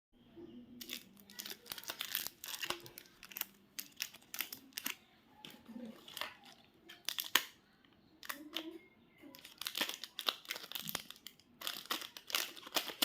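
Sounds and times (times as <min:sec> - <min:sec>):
wrapper crinkling and tearing: 0:00.8 - 0:07.6, 0:09.3 - 0:13.0.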